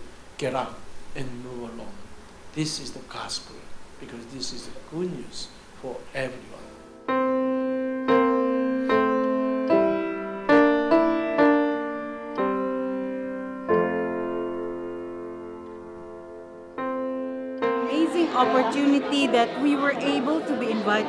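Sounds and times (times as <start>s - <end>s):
solo piano chords: 6.5s - 21.0s.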